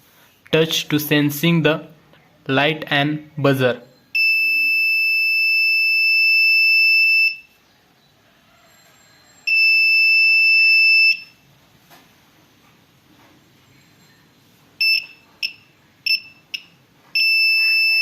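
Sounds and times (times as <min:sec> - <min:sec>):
doorbell buzzer tone: 0:08.8 - 0:11.4, 0:14.8 - 0:18.0.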